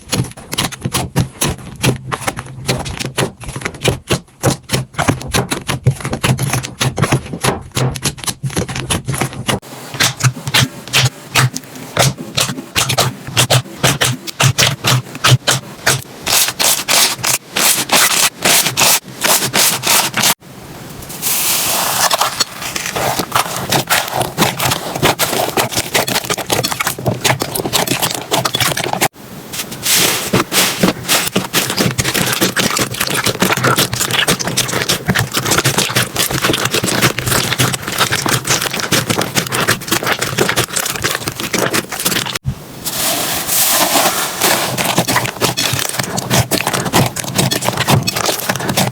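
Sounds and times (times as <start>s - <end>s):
slime crackling and clicking: 22.8s - 29.1s, 31.1s - 42.4s.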